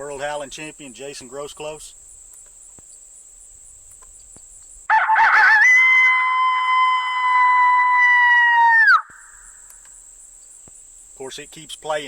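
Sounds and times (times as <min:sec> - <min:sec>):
crickets chirping: 0:00.0 - 0:12.0
coyote howl from speaker: 0:04.9 - 0:09.1.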